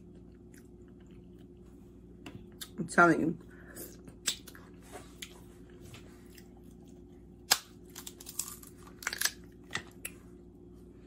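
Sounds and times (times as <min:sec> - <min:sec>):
close-up chewing: 0:00.0 - 0:02.8
crab shells cracking: 0:07.4 - 0:09.9.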